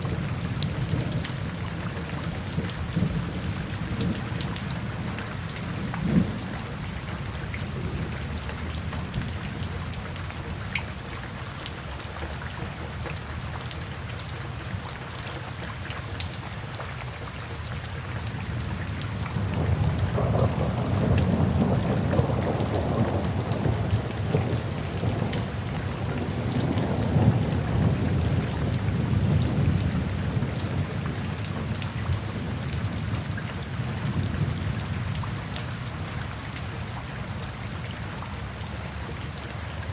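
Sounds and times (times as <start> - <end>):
low rumble of thunder: 0.0 - 10.6, 18.3 - 36.8
steady rain: 0.0 - 39.9
raindrop ticks: 0.1 - 28.8.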